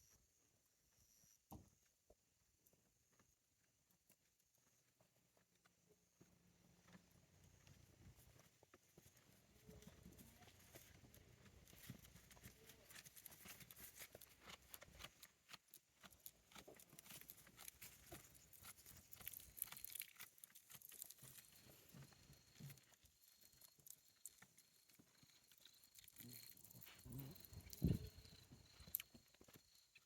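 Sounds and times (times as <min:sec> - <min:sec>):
goat chewing cud: 0:09.8 - 0:22.8.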